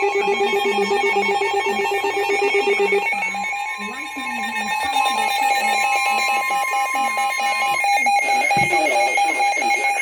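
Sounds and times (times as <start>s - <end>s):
electronic alarm tone: 0.0s - 10.0s.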